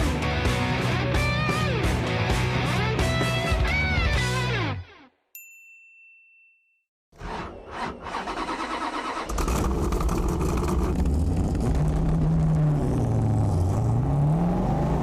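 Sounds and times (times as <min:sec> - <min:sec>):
car engine revving: 0:07.2 - 0:15.0.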